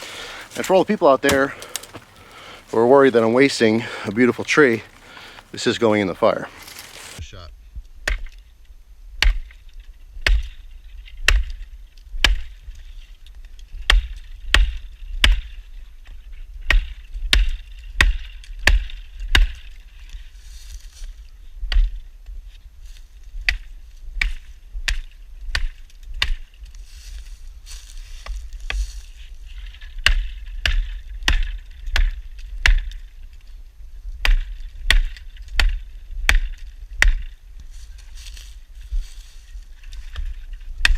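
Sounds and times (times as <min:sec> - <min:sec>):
hatchet chopping wood: 0:00.0 - 0:02.6, 0:09.2 - 0:09.6, 0:10.2 - 0:10.6, 0:11.2 - 0:11.6, 0:12.2 - 0:12.6, 0:13.9 - 0:15.6, 0:16.7 - 0:19.6, 0:23.5 - 0:26.4, 0:30.0 - 0:33.0, 0:34.2 - 0:37.3, 0:40.1 - 0:40.9.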